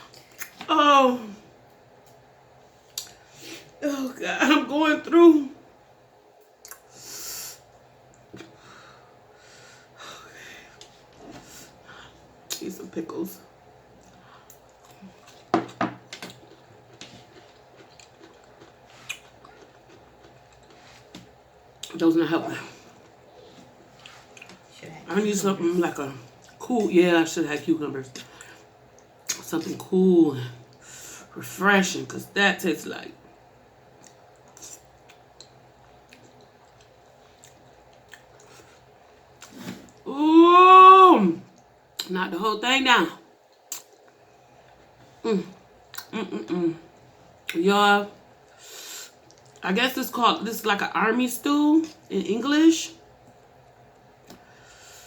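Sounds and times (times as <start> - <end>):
crunching and chewing pickles: 14.6 - 21.2, 34.0 - 40.0.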